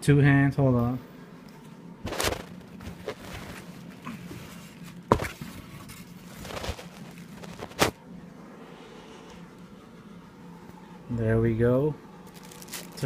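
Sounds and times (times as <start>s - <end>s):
cardboard box rustling and scraping: 2.1s - 8.0s.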